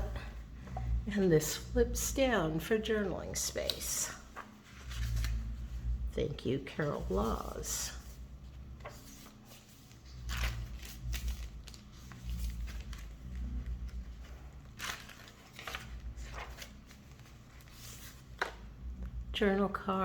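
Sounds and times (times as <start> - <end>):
paper rustling and crinkling: 2.8 - 18.9
low rumble: 4.3 - 9.0, 9.8 - 20.0.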